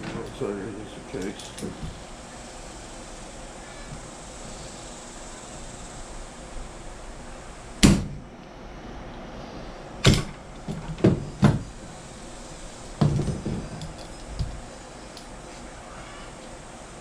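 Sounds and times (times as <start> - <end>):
tools knocking and clunking: 13.0 - 14.6.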